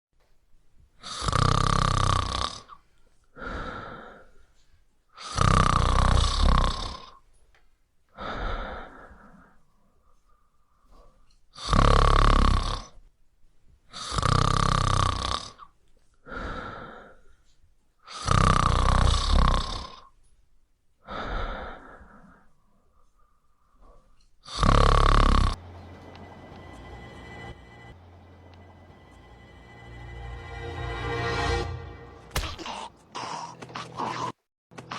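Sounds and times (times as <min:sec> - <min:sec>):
person snoring loudly: 0:01.0 - 0:02.7, 0:05.2 - 0:07.1, 0:11.6 - 0:12.9, 0:14.0 - 0:15.6, 0:18.1 - 0:20.0, 0:24.5 - 0:25.6.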